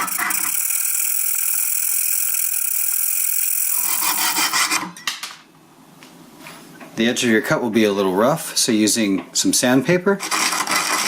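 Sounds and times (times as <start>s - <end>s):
saw scraping metal: 3.7s - 4.9s.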